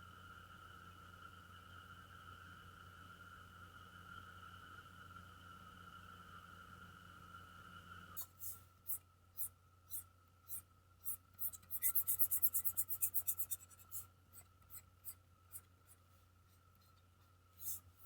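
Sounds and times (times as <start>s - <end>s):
pencil strokes scratching paper: 8.2s - 17.0s, 17.6s - 18.0s.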